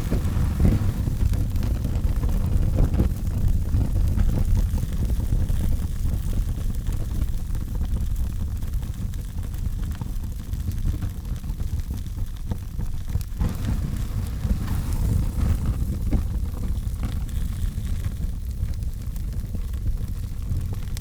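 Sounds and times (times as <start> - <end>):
fire hissing: 0.0 - 2.8, 13.4 - 18.8
fire burning with crackles: 0.0 - 21.0.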